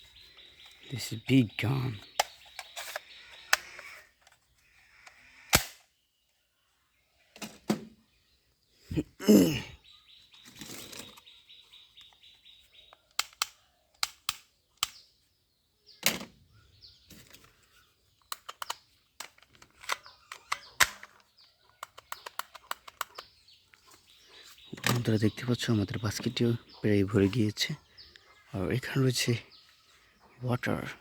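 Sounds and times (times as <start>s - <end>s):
plastic toy guns clicking: 13.1s - 15.0s, 18.2s - 23.3s.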